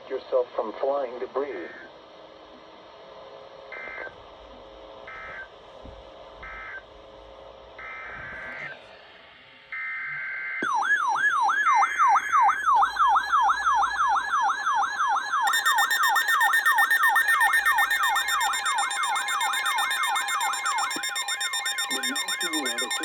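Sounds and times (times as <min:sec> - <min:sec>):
siren-like yelp: 0:07.8 - 0:08.8, 0:09.8 - 0:23.0
warbling data tone: 0:11.7 - 0:23.0
two-tone attention signal: 0:15.5 - 0:23.0.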